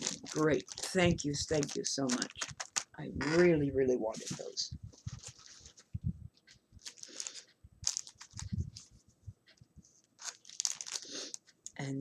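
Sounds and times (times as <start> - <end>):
package rustling and clicking: 0.0 - 3.4, 5.0 - 8.9, 10.0 - 11.8.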